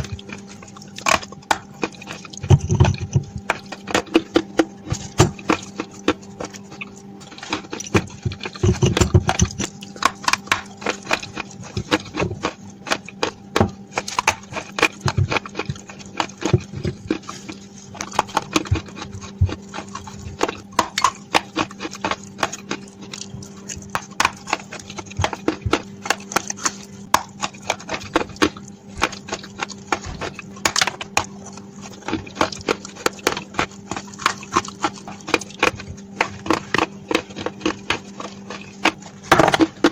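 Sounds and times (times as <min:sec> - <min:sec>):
chewing crunches: 0:00.0 - 0:39.9
steady low hum: 0:00.0 - 0:39.9.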